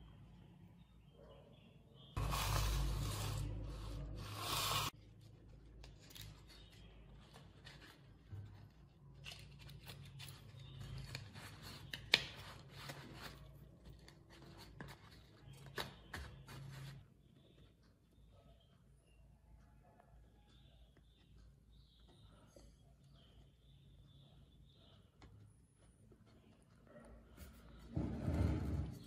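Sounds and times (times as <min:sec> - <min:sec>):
scraping and rubbing: 0:02.2 - 0:17.0, 0:26.6 - 0:29.0.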